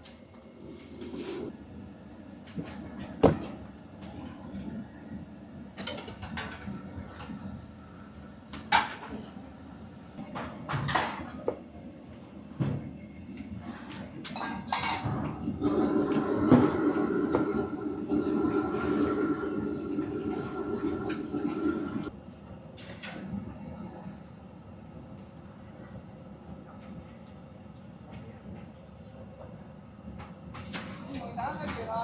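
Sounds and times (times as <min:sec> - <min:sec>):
dishes and utensils clattering: 0:14.2 - 0:15.3.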